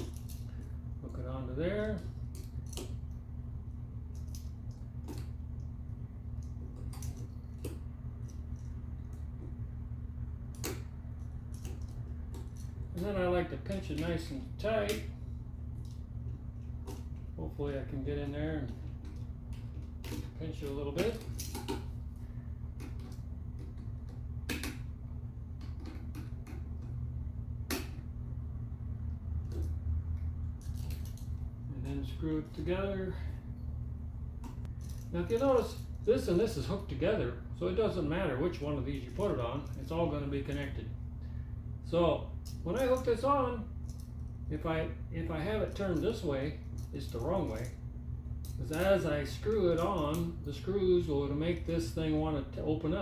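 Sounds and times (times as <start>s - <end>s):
pliers and wire clicks: 0.0s - 3.2s, 4.1s - 5.8s, 6.4s - 9.6s, 10.4s - 24.9s, 25.6s - 27.0s
steady low hum: 0.0s - 53.0s.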